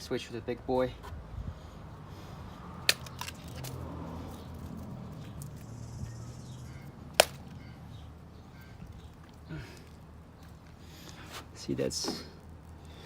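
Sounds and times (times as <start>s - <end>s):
knife whacking pineapple: 7.2s - 7.4s.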